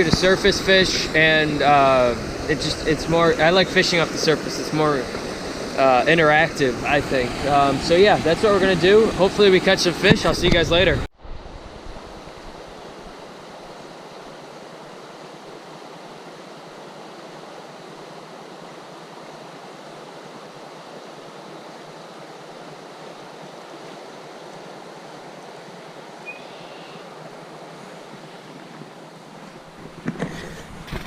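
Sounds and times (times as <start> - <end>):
creek water rushing: 0.0 - 31.0
faint chirp: 26.2 - 27.1.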